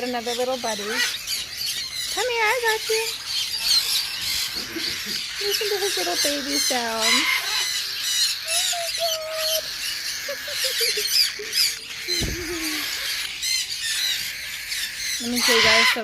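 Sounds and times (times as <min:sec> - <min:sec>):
many birds chirping and squawking: 0:00.0 - 0:16.0
young bird baby calls: 0:00.0 - 0:16.0.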